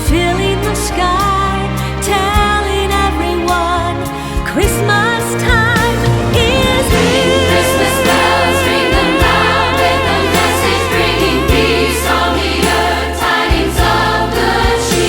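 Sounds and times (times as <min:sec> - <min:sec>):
orchestral accompaniment: 0:04.4 - 0:15.0
choir singing: 0:05.8 - 0:15.0.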